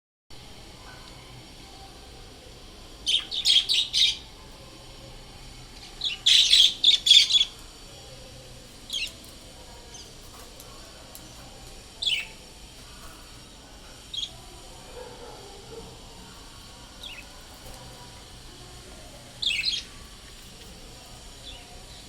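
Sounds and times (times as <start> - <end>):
birds calling: 3.1 - 4.2, 12.0 - 12.4, 16.9 - 17.8, 19.4 - 20.1.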